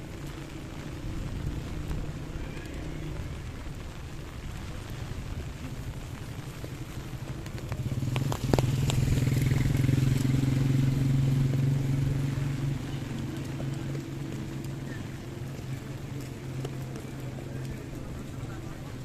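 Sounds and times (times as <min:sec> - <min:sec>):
vehicle engine passing by: 0:07.6 - 0:19.0.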